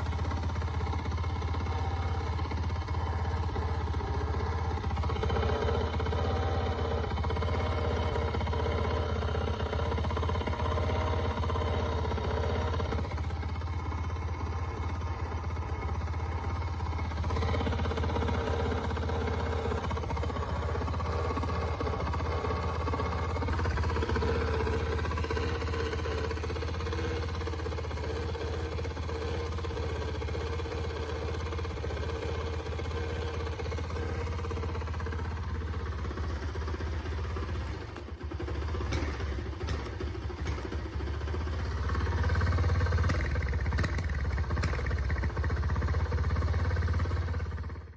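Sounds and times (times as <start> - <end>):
small motorcycle engine idling: 0.0 - 47.9.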